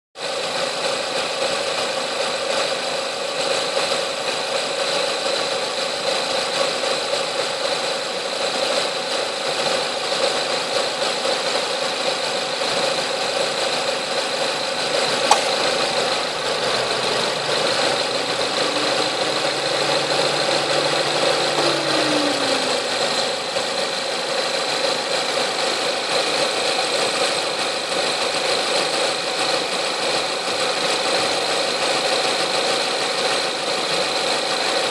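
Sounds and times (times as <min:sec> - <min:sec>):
extraneous engine noise: 0:00.2 - 0:34.9
car engine running: 0:11.8 - 0:28.1.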